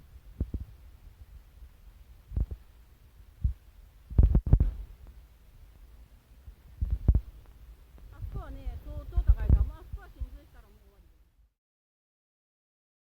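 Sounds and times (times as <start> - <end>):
faint low rumble: 0.0 - 11.6
low thumps and bumps: 6.7 - 10.4.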